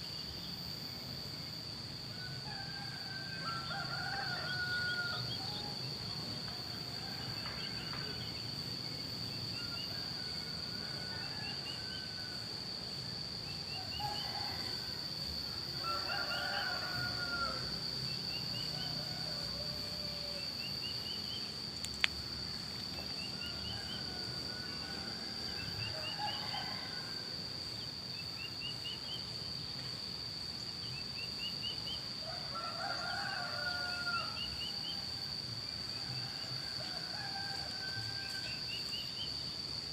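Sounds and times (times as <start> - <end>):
steady high-pitched buzz: 0.0 - 39.9
roosters crowing: 2.1 - 6.0, 9.6 - 12.7, 13.7 - 20.8, 23.2 - 27.5, 32.1 - 39.0.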